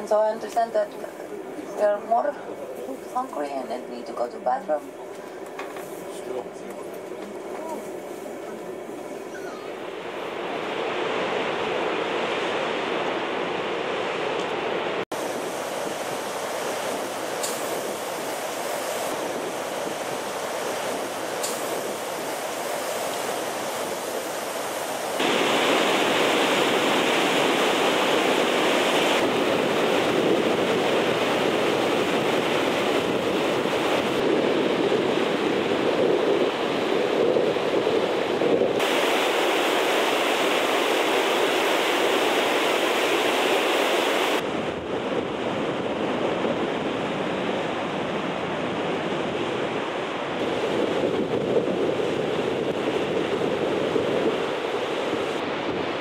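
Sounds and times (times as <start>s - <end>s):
wind on microphone: 6.9s - 56.0s
waterfall rushing: 15.2s - 32.7s, 38.8s - 44.4s.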